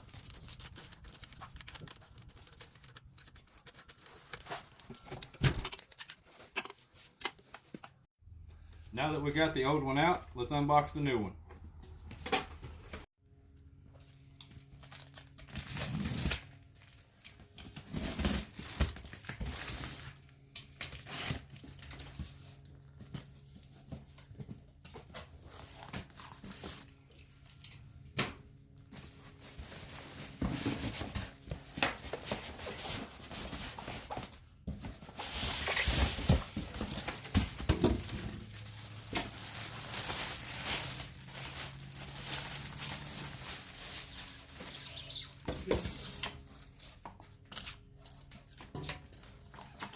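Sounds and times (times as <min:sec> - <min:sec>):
packaging tearing and crinkling: 0:14.8 - 0:17.2, 0:35.6 - 0:44.9.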